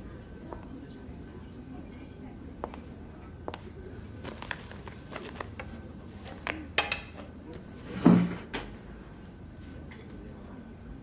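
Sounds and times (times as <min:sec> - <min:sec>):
tableware clicking and clinking: 0:06.8 - 0:07.3.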